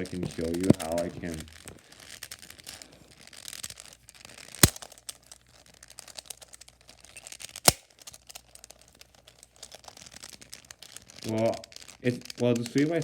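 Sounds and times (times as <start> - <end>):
plastic cube clicking and rattling: 0.0 - 13.0
sharp loud snaps: 7.6 - 8.0.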